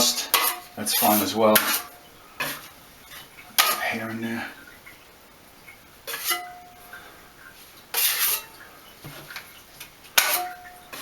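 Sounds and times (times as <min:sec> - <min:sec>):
putty knife scraping drywall: 0:08.0 - 0:08.5.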